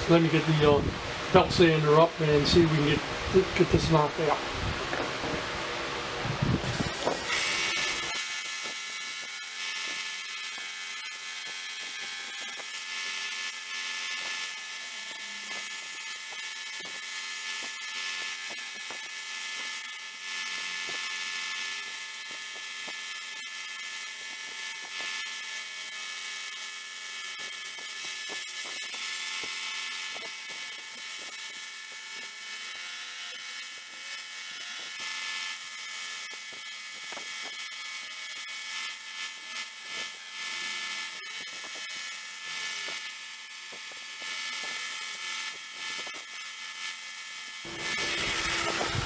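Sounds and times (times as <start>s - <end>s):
belt sander grinding metal: 6.7s - 23.5s, 47.5s - 49.0s.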